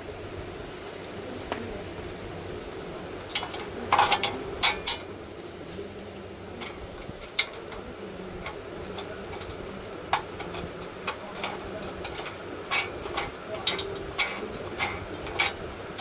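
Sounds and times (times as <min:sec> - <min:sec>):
metal clinks and knocks: 0:08.4 - 0:16.0.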